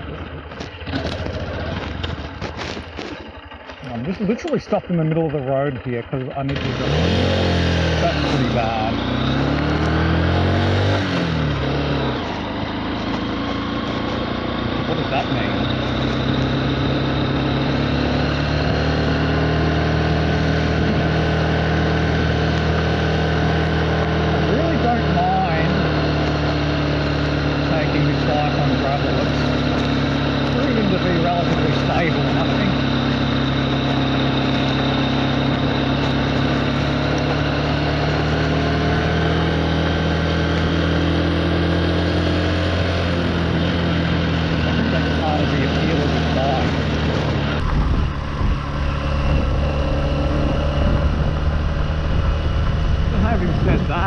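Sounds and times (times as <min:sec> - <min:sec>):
road and wind noise: 0:00.0 - 0:54.0
small motorbike engine running: 0:00.0 - 0:54.0
wind noise on microphone: 0:46.6 - 0:54.0.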